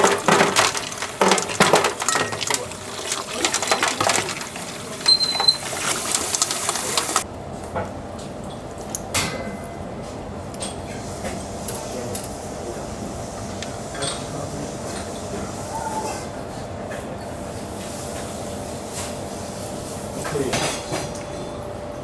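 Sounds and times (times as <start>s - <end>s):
utensils and dishes clattering: 0.0s - 7.2s, 10.6s - 12.6s, 20.1s - 21.6s
water hissing: 0.0s - 7.2s.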